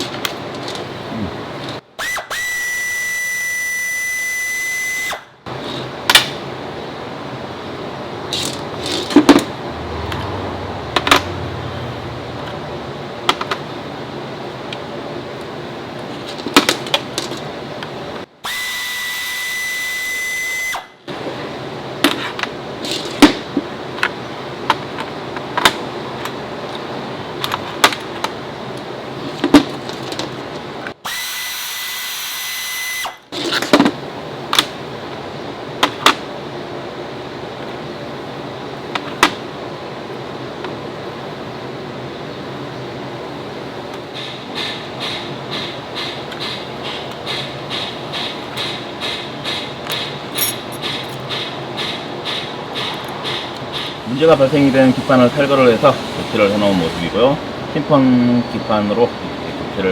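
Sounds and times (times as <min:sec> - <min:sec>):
steady background hum: 0:00.0 - 0:59.9
power tool whine: 0:02.0 - 0:05.3, 0:18.4 - 0:21.0, 0:31.0 - 0:33.2, 0:54.0 - 0:59.4.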